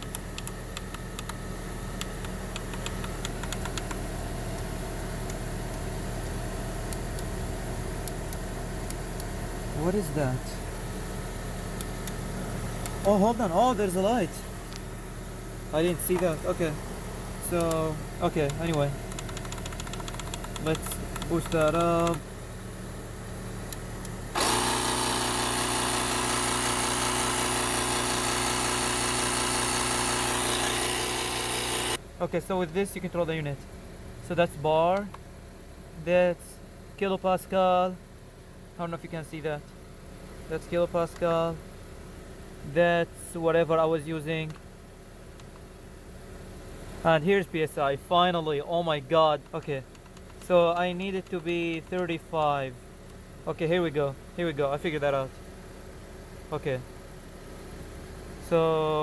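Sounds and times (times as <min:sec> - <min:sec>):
car engine idling: 0:00.0 - 0:30.3, 0:31.8 - 0:59.0
air compressor running: 0:00.0 - 0:32.0.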